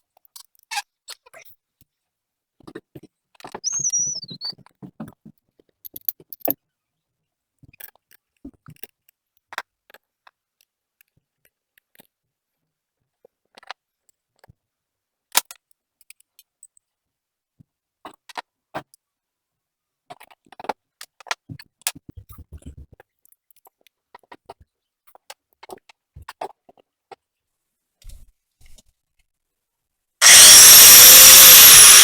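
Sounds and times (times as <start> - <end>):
short high squeak: 3.6 - 4.6.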